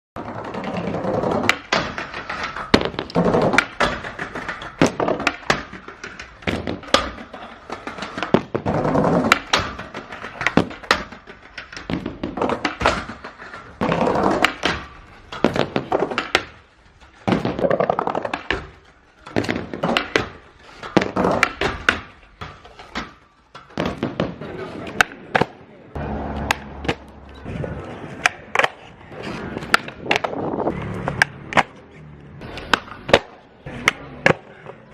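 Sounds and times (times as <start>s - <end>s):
skateboard landing clacks: 0.2s - 25.6s, 28.1s - 28.8s, 29.5s - 31.8s, 32.4s - 34.9s
skateboard sliding on a rail: 0.2s - 34.9s
skateboard trucks grinding: 0.2s - 34.9s
skateboard tail pops: 32.5s - 34.5s.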